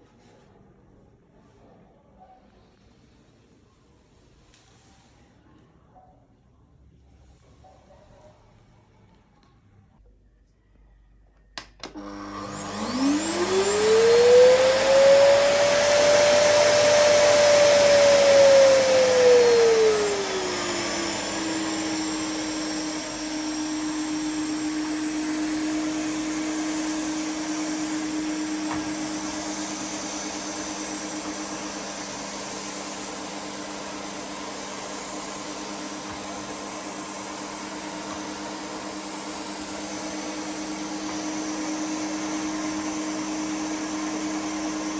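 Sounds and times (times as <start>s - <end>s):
vacuum cleaner switch click: 11.6s - 12.4s
vacuum cleaner motor whine: 11.6s - 44.9s.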